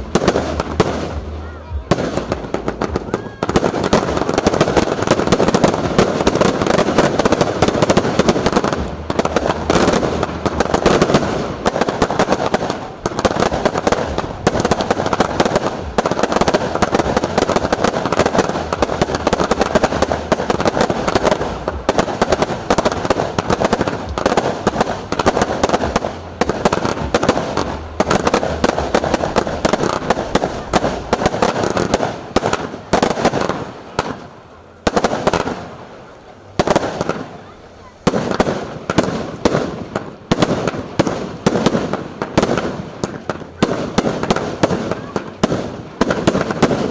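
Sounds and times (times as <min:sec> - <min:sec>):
fireworks bangs and crackles: 0:00.0 - 0:46.9.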